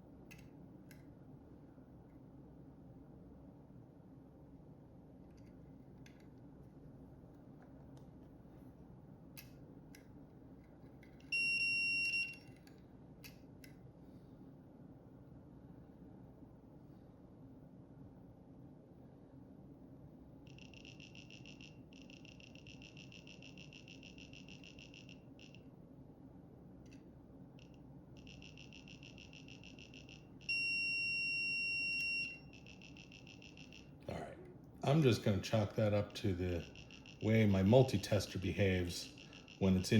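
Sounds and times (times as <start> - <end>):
multimeter high-pitched beep: 11.3 - 12.4, 20.5 - 25.6, 27.6 - 34.0, 36.5 - 39.9.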